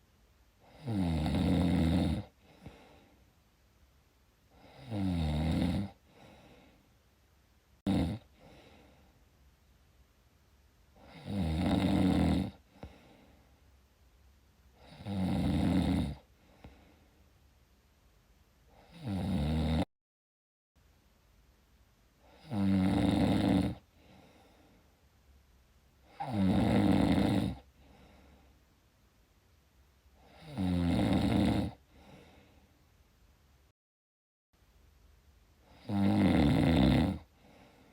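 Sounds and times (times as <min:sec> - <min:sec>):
person snoring: 0:00.6 - 0:03.0, 0:04.6 - 0:06.7, 0:07.8 - 0:09.0, 0:11.0 - 0:13.2, 0:14.8 - 0:16.8, 0:18.7 - 0:19.9, 0:22.2 - 0:24.5, 0:26.1 - 0:27.7, 0:30.2 - 0:32.4, 0:35.7 - 0:37.8
quiet breathing: 0:02.2 - 0:03.7, 0:04.4 - 0:04.9, 0:05.9 - 0:07.2, 0:08.2 - 0:09.4, 0:12.5 - 0:13.9, 0:16.2 - 0:17.5, 0:23.7 - 0:25.2, 0:27.5 - 0:28.9, 0:31.7 - 0:33.0, 0:35.6 - 0:35.9, 0:37.2 - 0:37.9.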